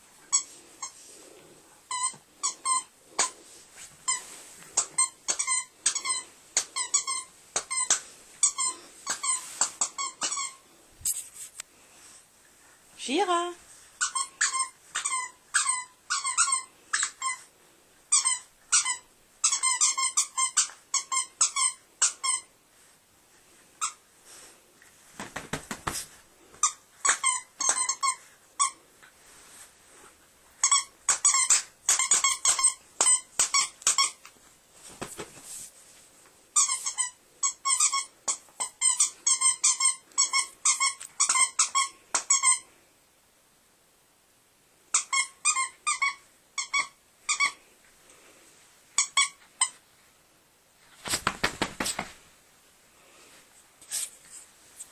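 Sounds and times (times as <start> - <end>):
squeaky dog toy squeaking: 1.9 - 3.4, 4.1 - 10.6, 13.4 - 17.5, 18.1 - 22.6, 23.8 - 24.0, 26.6 - 28.8, 30.6 - 34.2, 36.6 - 42.7, 44.9 - 47.6, 49.0 - 49.8
rustling scuffle: 24.9 - 26.7, 34.3 - 36.4, 50.8 - 52.3.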